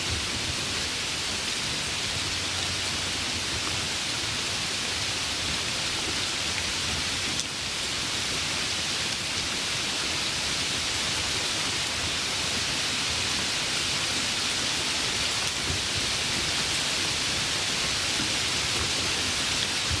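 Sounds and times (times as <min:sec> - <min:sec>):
rain hissing: 0:00.0 - 0:20.0
running water: 0:00.0 - 0:20.0.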